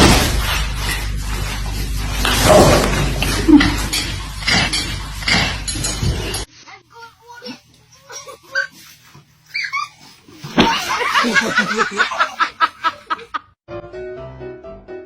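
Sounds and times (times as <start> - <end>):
people laughing: 10.6 - 13.5.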